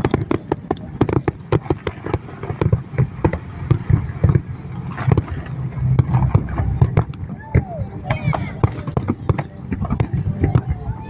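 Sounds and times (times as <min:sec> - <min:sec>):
fireworks bangs and crackles: 0:00.0 - 0:07.7
low continuous rumble: 0:00.0 - 0:11.0.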